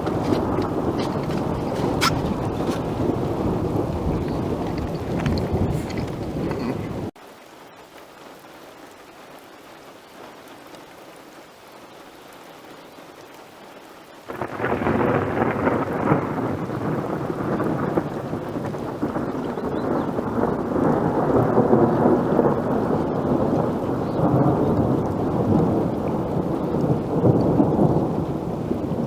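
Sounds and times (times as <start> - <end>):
thunder rumbling: 0.0 - 7.2, 14.3 - 29.0
faint hiss of rain: 0.0 - 29.0.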